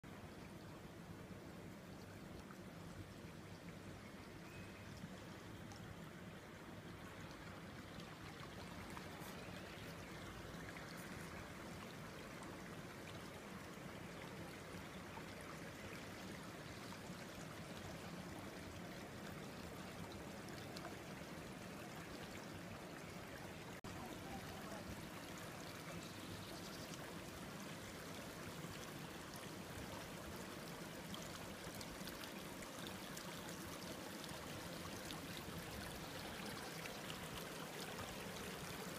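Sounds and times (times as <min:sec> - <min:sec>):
stream babbling over stones: 0:00.1 - 0:38.9.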